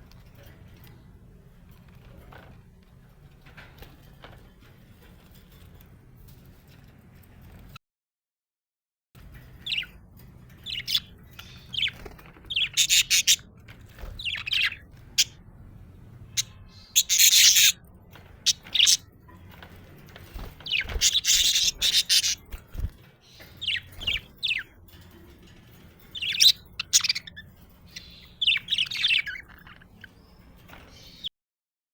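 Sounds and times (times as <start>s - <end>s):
budgerigars chirping: 10.6s - 13.5s, 14.2s - 15.4s, 16.2s - 17.8s, 18.4s - 19.0s, 20.2s - 24.7s, 26.1s - 31.3s
budgerigar squawks: 17.0s - 17.8s, 21.0s - 22.4s.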